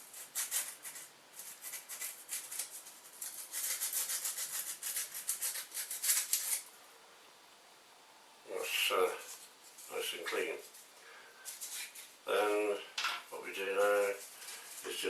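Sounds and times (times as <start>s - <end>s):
sandpaper scratching: 0.0s - 6.7s, 11.5s - 12.2s, 13.4s - 15.0s.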